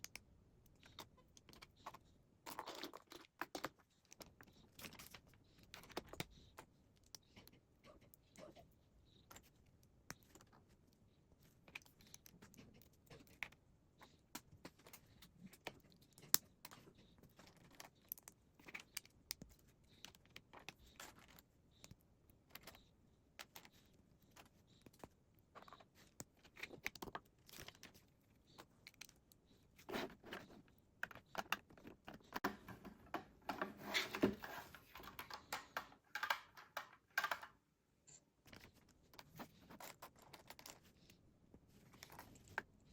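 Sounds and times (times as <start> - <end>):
plastic lego pieces clicking: 35.0 - 37.6.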